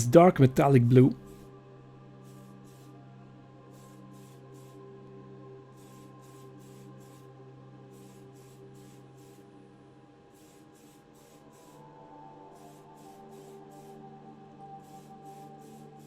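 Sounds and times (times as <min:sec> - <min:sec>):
aerosol spray hisses: 0:02.2 - 0:03.0, 0:03.7 - 0:04.9, 0:05.7 - 0:09.6, 0:10.3 - 0:16.0.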